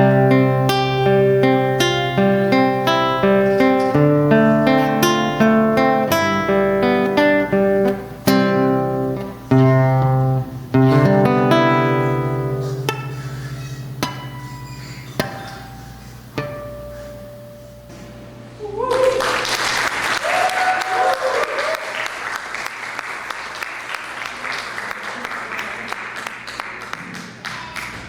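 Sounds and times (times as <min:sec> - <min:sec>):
acoustic guitar playing: 0:00.0 - 0:18.6.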